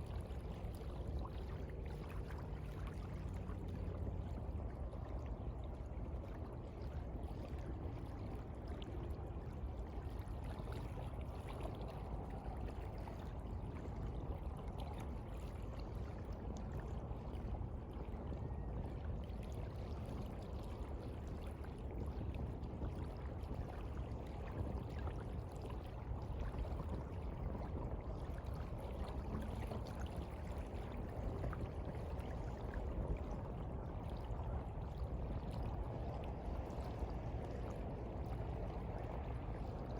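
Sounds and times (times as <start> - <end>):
small water splashes: 0.0 - 39.9
sea water lapping: 19.3 - 39.9.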